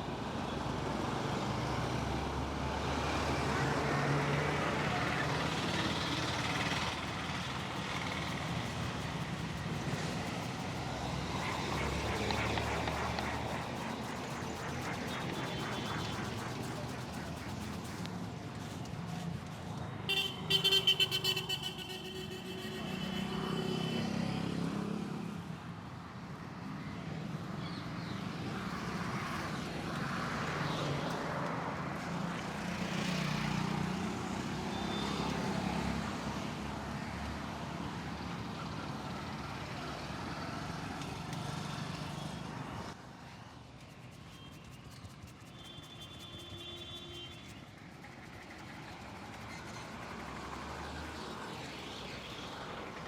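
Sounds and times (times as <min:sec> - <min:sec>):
street traffic: 0:00.0 - 0:53.0
vehicle horn honking: 0:20.1 - 0:24.1.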